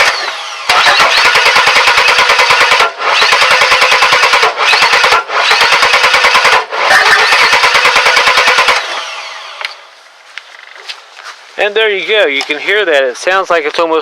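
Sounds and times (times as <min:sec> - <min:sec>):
engine cranking on starter: 0:00.0 - 0:09.7.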